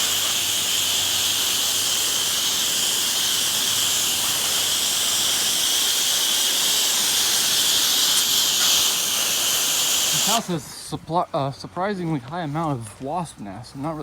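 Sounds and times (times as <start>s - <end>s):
pressure washer spraying: 0.0s - 10.7s.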